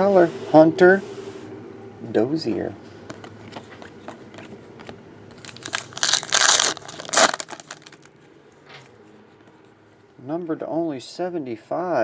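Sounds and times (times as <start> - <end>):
wrapper crinkling: 5.3 - 8.1.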